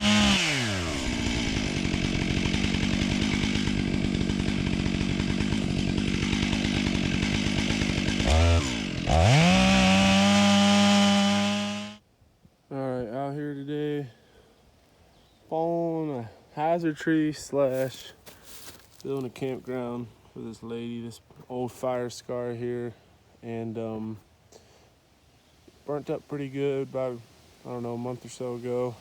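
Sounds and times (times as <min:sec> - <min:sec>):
chainsaw engine idling and revving: 0:00.0 - 0:12.0.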